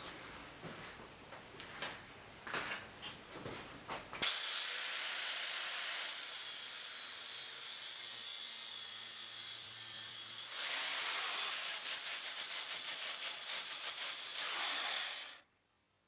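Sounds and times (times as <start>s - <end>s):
angle grinder grinding steel: 4.3s - 15.4s.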